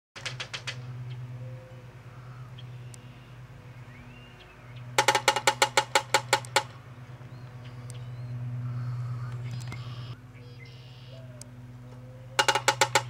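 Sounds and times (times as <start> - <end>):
woodpecker hammering on wood: 0.2 - 0.9, 4.9 - 6.8, 12.4 - 13.0.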